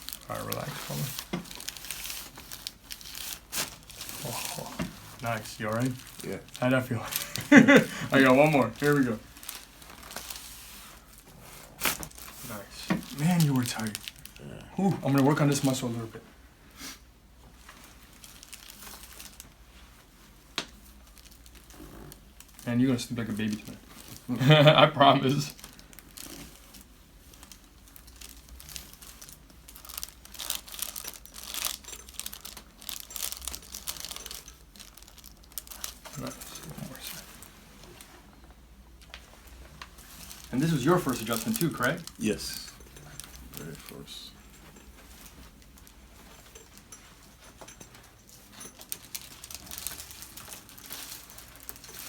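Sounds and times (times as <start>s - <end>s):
table cover crinkling: 0.0s - 15.9s, 17.5s - 52.0s
clothing rustling: 0.0s - 16.2s, 17.3s - 52.0s
low steady room hum: 0.0s - 52.0s.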